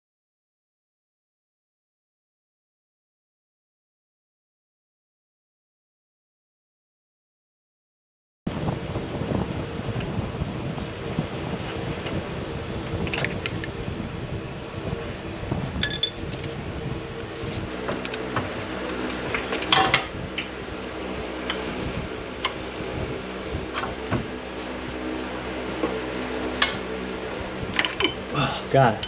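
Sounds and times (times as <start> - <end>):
steady low hum: 8.5 - 29.0
metal tools clinking: 15.8 - 16.3.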